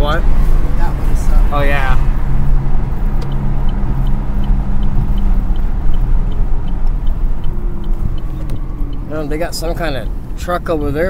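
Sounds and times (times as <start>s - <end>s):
car road and engine noise: 0.0s - 11.0s
faint light ticking: 2.4s - 11.0s.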